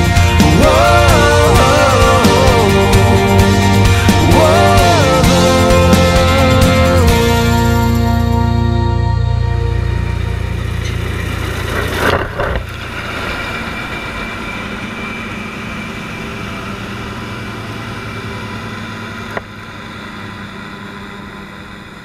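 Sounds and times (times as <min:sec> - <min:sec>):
machinery engine running: 0:00.0 - 0:22.0
loud rush: 0:10.6 - 0:19.3.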